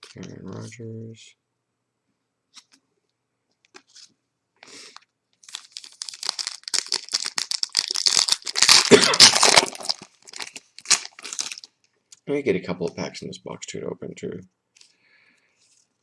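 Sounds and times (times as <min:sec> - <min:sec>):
foil wrapper crinkling: 0:05.4 - 0:11.8.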